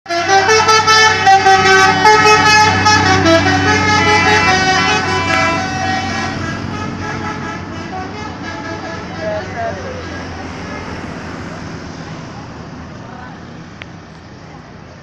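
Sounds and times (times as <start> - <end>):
musical vehicle horn tune: 0.1 - 10.9.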